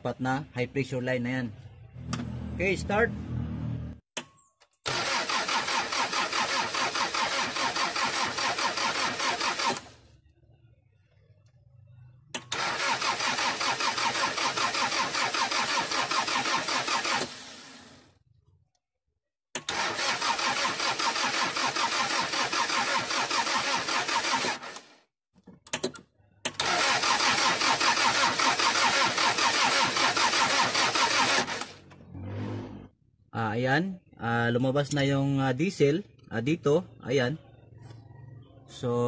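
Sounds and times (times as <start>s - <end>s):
diesel engine cranking: 4.8s - 10.1s, 12.3s - 18.0s, 19.5s - 24.9s, 25.6s - 32.9s.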